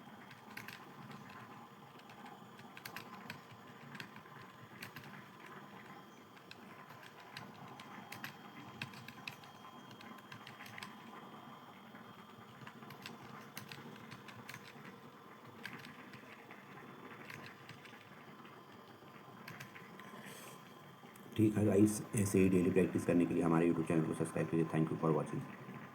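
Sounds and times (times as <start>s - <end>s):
computer keyboard typing: 0.2s - 11.2s, 12.5s - 18.3s, 19.4s - 20.1s.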